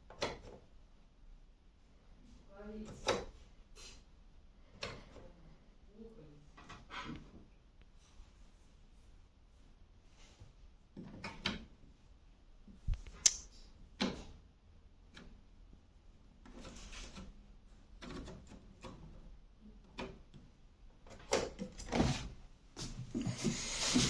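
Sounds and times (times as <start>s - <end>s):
sharp click: 13.0s - 13.5s
clicks and knocks of handling: 16.4s - 22.0s.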